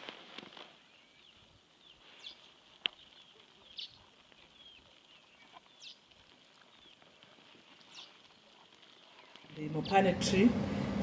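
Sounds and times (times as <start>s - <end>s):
soft bird twittering: 0.8s - 6.0s, 7.9s - 10.0s
bird chirps: 0.9s - 6.0s, 7.8s - 10.0s.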